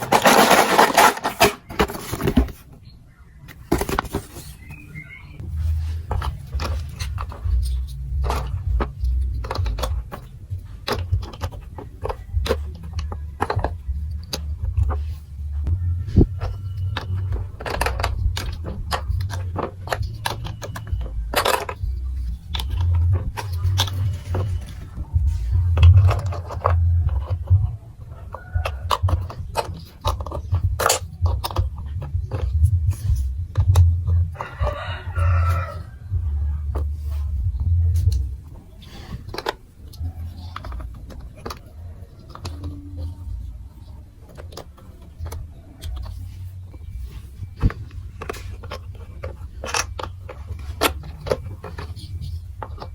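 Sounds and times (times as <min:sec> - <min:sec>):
plastic pieces clicking: 0:00.0 - 0:02.6, 0:05.8 - 0:36.0, 0:36.6 - 0:52.9
low rumble: 0:05.3 - 0:29.6, 0:30.4 - 0:39.3.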